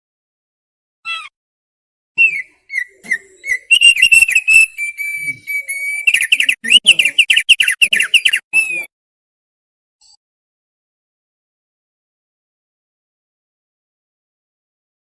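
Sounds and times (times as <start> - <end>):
bird singing whistled phrase: 2.2 - 8.9.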